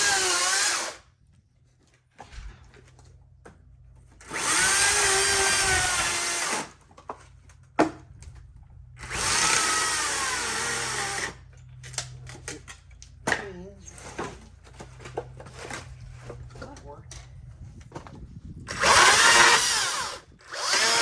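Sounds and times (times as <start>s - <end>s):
power saw cutting wood: 0.0s - 1.0s, 4.1s - 6.8s, 9.0s - 11.5s, 18.7s - 21.0s.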